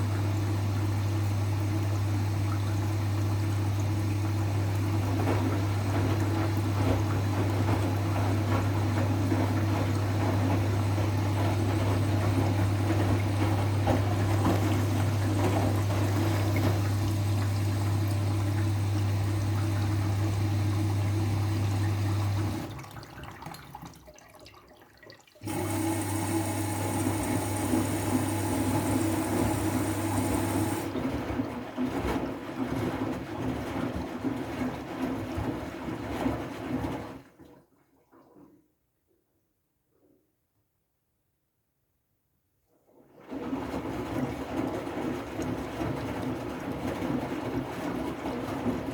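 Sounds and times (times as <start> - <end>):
washing machine low hum: 0.0 - 37.4, 43.1 - 48.9
water rushing and splashing: 25.4 - 30.9.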